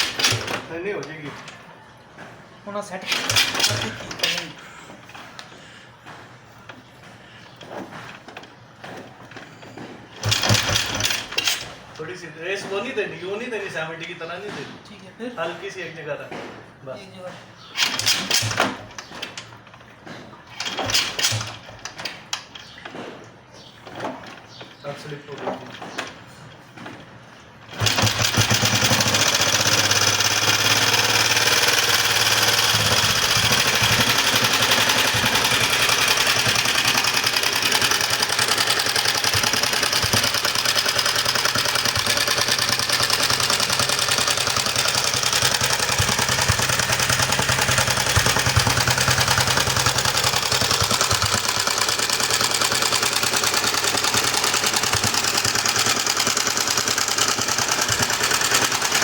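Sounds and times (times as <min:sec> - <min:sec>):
motorcycle engine running: 0:27.7 - 0:59.0.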